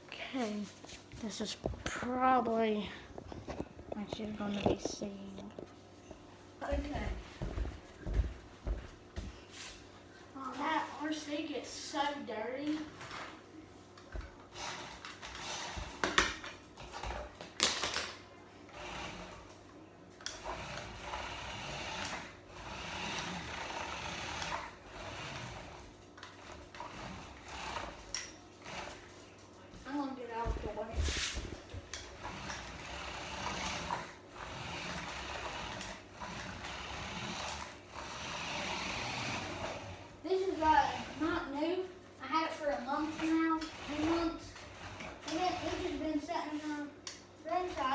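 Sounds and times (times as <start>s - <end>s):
toy car electric motor whirring: 14.4s - 18.1s, 18.7s - 19.6s, 20.2s - 29.1s, 31.9s - 41.6s, 42.3s - 46.6s.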